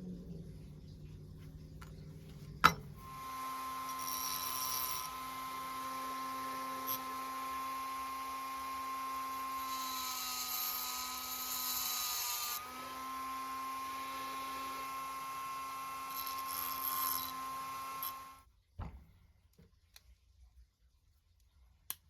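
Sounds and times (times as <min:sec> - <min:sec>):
drill grinding with high hiss: 0:03.1 - 0:18.4
rotary tool running: 0:03.1 - 0:18.4.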